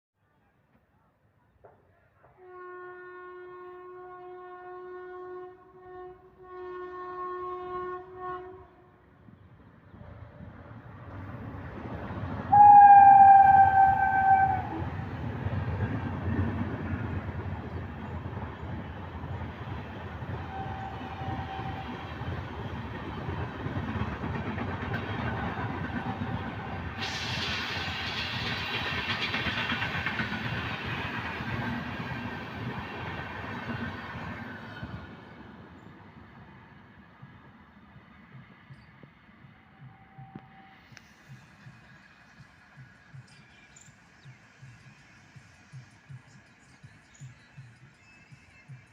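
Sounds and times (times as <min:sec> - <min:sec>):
locomotive horn blasts: 0:02.4 - 0:09.0, 0:12.5 - 0:15.0, 0:20.4 - 0:22.2
train rumbling past: 0:03.3 - 0:48.9.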